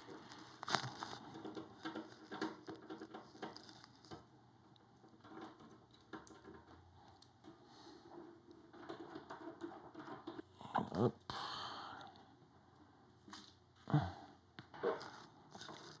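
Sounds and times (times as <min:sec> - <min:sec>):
hardware clicks and rustles: 0:00.0 - 0:10.5, 0:14.6 - 0:16.0.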